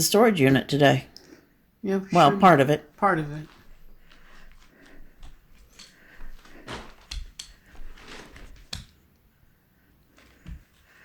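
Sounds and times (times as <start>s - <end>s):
knocks and rustles of handling: 3.4s - 9.1s, 9.9s - 11.0s.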